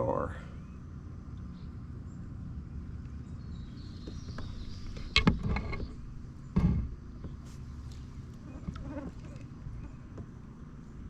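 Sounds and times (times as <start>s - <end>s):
steady low rumble: 0.0s - 11.0s
sharp knocks and clatters: 4.0s - 7.7s.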